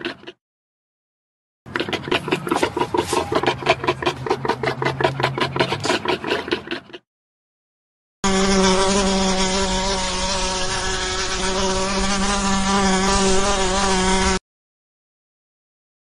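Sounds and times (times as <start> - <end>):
insect wings buzzing: 8.3 - 14.4.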